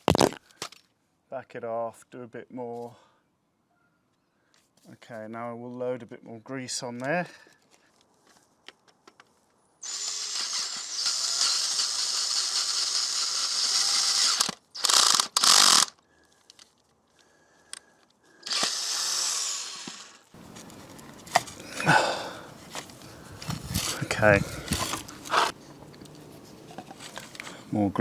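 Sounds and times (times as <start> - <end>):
power drill boring metal: 9.8 - 15.9, 18.4 - 21.6.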